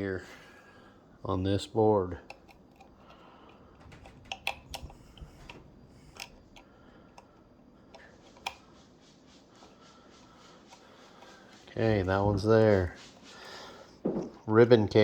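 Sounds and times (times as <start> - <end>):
faint handling noise: 0.0 - 15.0
plastic connectors clicking: 2.2 - 8.6.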